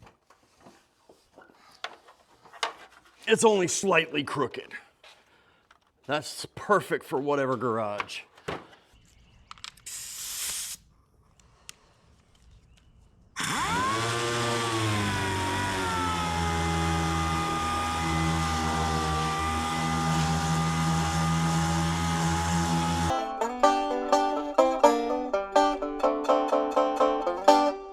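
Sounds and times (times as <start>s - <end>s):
brief hiss: 9.8s - 10.8s
power tool motor whining: 13.4s - 23.1s.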